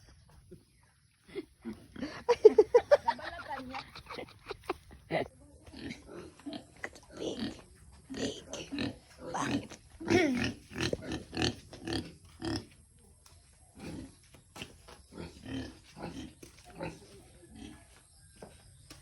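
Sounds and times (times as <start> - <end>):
pigs grunting: 3.6 - 12.8, 13.8 - 17.9.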